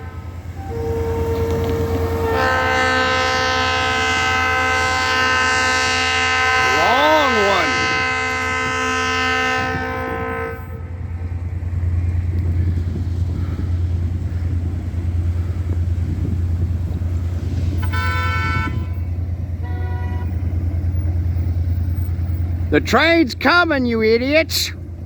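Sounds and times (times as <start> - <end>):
locomotive horn blasts: 0.0 - 11.3, 17.7 - 20.9
low rumble: 7.8 - 22.7.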